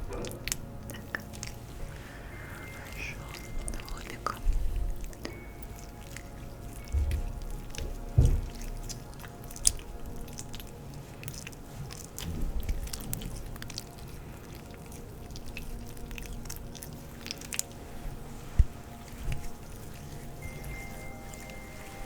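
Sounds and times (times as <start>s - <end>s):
soft music: 0.0s - 22.0s
low thumps: 6.8s - 9.0s.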